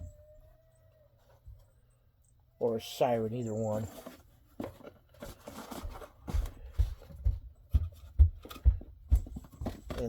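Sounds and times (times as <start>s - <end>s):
light rustling and scraping: 3.3s - 10.0s.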